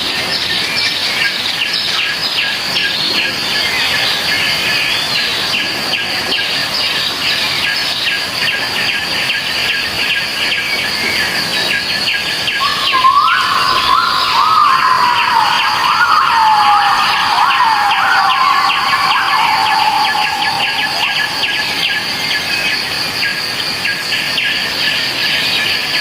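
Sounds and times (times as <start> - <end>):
birds chirping: 11.1 - 24.6
wavering siren-like call: 12.6 - 23.2.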